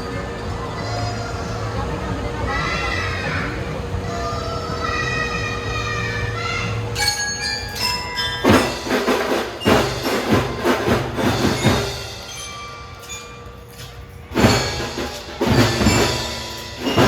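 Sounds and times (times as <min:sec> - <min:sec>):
glockenspiel bell notes: 0:07.0 - 0:17.0
sharp drum strikes: 0:08.4 - 0:12.6, 0:14.3 - 0:17.0.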